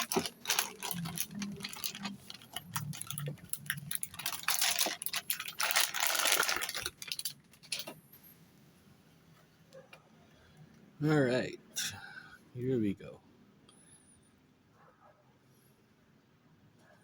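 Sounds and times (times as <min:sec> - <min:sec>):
cardboard and plastic packaging handled: 0:00.0 - 0:08.0.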